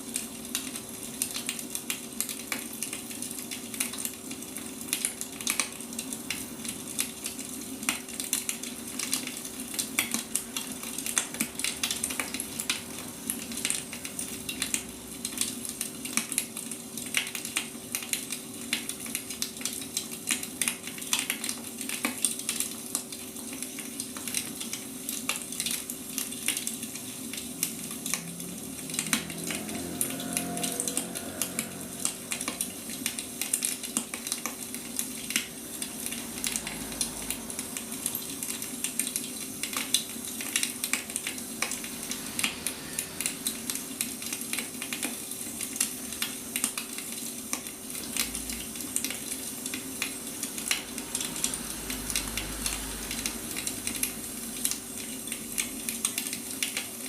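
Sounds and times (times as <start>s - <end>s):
faint steady hum: 0.0s - 57.0s
fire hissing: 30.9s - 57.0s.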